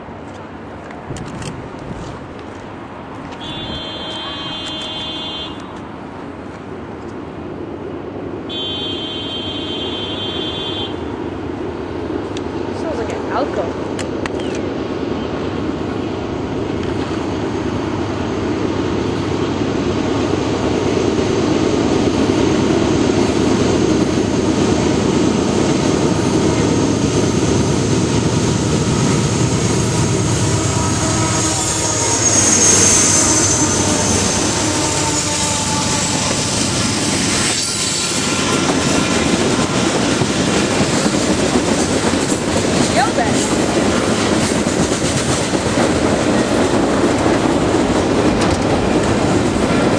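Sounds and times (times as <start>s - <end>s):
train wheels rumbling on rails: 9.6s - 49.9s
steel wheels squealing: 30.6s - 39.2s.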